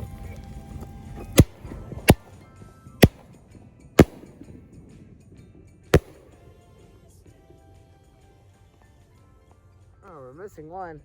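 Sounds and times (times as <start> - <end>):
fireworks bangs: 1.4 - 2.3, 4.0 - 4.4, 6.0 - 6.2.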